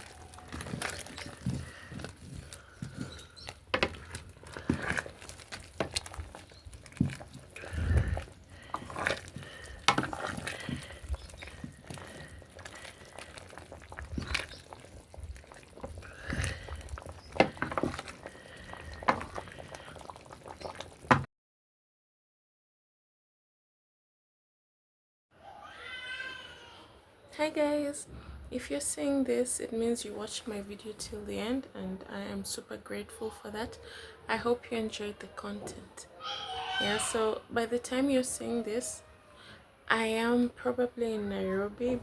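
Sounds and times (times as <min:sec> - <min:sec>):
stew bubbling in a pot: 0:00.0 - 0:21.3.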